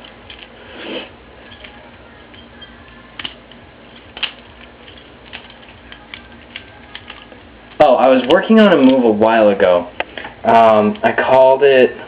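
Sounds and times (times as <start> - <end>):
butterfly knife handles clacking: 1.4 - 9.0.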